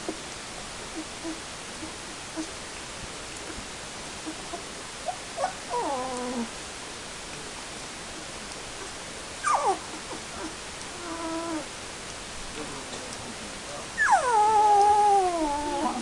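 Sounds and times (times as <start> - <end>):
steady hiss: 0.0 - 16.0
puppies whimpering: 1.0 - 2.5, 4.2 - 6.5, 9.4 - 11.7, 14.0 - 16.0.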